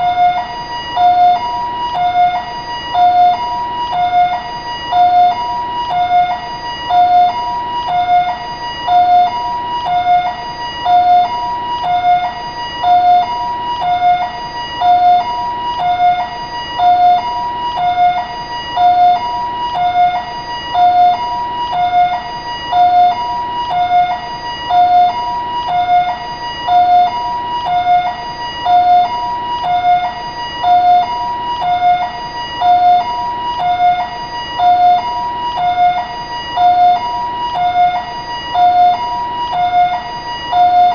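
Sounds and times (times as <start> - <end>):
two-tone ambulance siren: 0.0 - 40.9.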